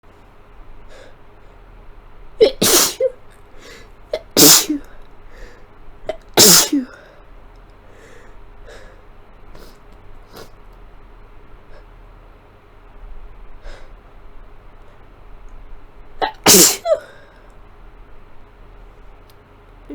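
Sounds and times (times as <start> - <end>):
person sneezing: 2.4 - 3.1, 4.1 - 4.9, 6.1 - 7.0, 16.2 - 17.2
breaths and sniffles: 3.5 - 4.0, 7.8 - 10.6, 13.6 - 14.0.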